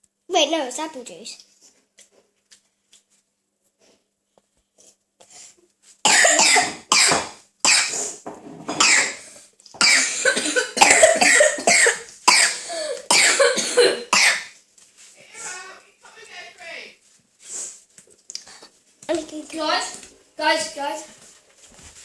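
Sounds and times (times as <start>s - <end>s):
person coughing: 6.1s - 8.1s, 8.8s - 14.5s.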